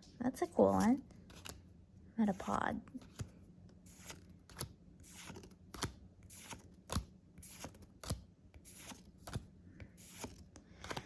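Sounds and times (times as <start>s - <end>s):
trading cards flipped through: 3.0s - 11.0s.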